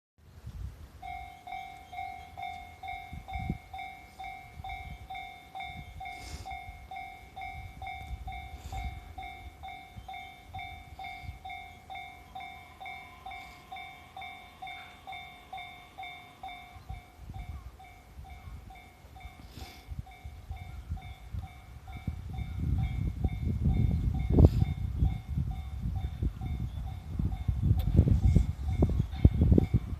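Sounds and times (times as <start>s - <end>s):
electric train passing: 0.8s - 29.9s
level crossing warning bell: 1.0s - 29.9s.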